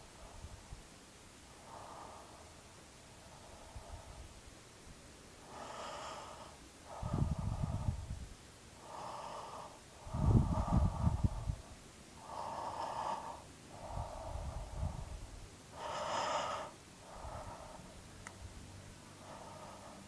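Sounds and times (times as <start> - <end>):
rasping throat rumble: 7.0 - 8.1, 8.9 - 11.6.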